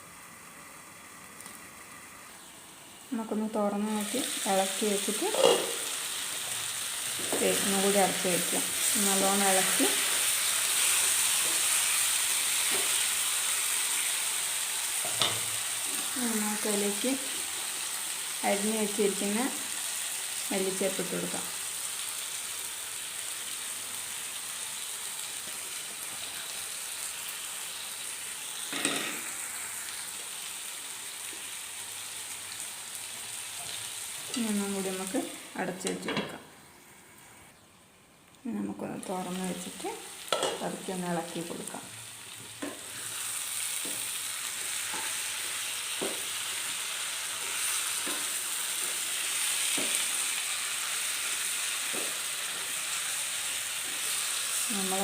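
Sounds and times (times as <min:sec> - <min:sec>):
meat sizzling in a pan: 0:00.0 - 0:35.7, 0:38.8 - 0:55.0
spoon scraping a pan: 0:05.3 - 0:06.0.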